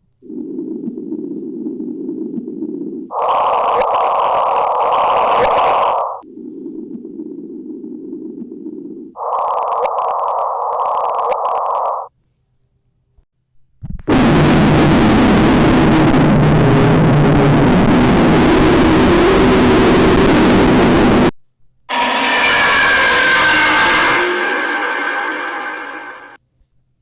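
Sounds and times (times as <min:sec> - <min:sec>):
crackling hiss: 0:08.2 - 0:12.1
harsh rushing noise: 0:21.9 - 0:26.4
low droning tones: 0:21.9 - 0:26.4.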